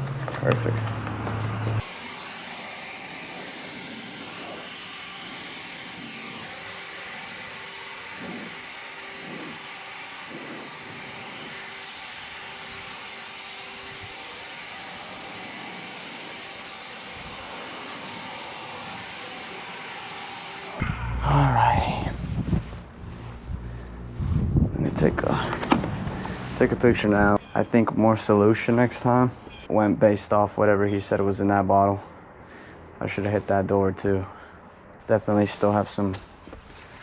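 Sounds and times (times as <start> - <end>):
pressure washer spraying: 1.8 - 20.8.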